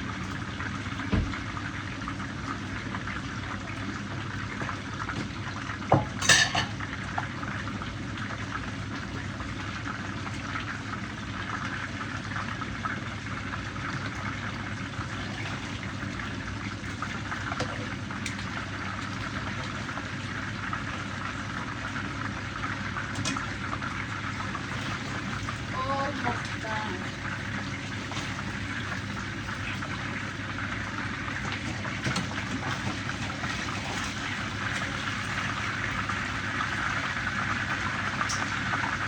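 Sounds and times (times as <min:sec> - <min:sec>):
food sizzling in a pan: 0:00.0 - 0:32.4
metal utensil clanking on pan: 0:06.1 - 0:06.8.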